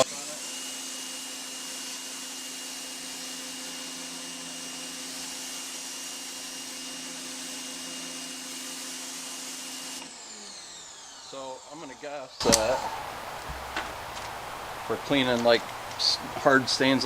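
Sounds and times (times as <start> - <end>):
pressure washer motor humming: 7.2 - 17.0
water spraying onto concrete: 12.4 - 17.0.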